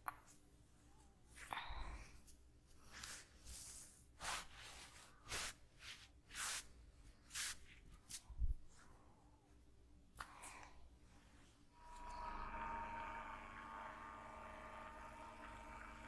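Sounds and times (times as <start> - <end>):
hands rubbing over skin: 2.2 - 8.9.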